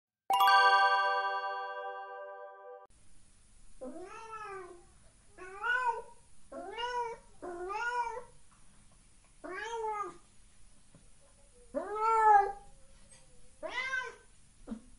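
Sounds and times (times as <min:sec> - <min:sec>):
cat meowing: 0:13.6 - 0:14.3.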